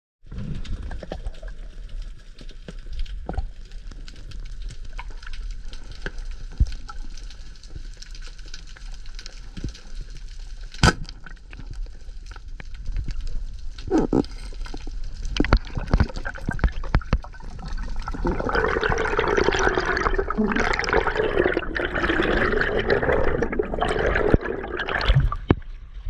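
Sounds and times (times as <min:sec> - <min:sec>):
underwater crackle of clicks: 0:00.5 - 0:25.9.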